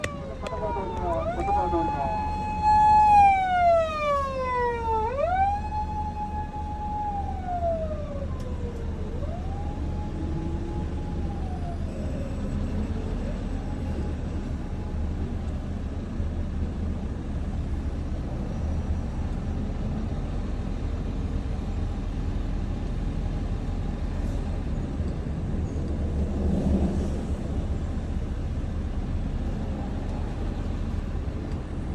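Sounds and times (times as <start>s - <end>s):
police siren wailing: 0.0s - 15.8s
low road traffic rumble: 0.0s - 31.9s.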